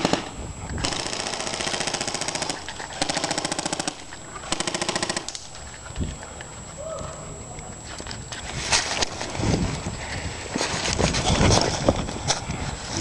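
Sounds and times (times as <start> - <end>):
airsoft gun full auto bursts: 0.0 - 5.5.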